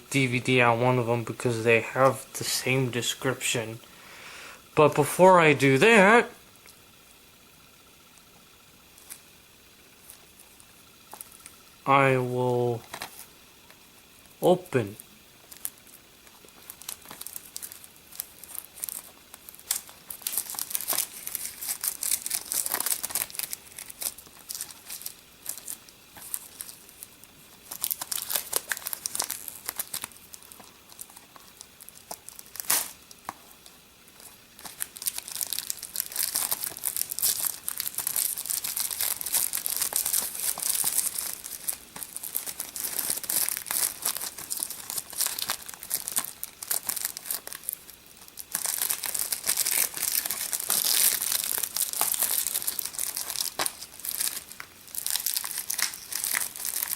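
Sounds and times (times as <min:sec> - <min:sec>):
plastic shrink-wrap tearing and crinkling: 0:15.0 - 0:56.9.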